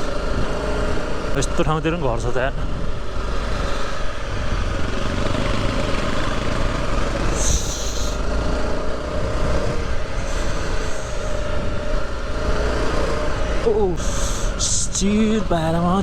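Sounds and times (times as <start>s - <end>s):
wind noise on microphone: 0.0s - 1.0s, 7.2s - 13.7s
motorcycle engine running: 0.0s - 16.0s
high-pitched squeal: 9.6s - 15.8s.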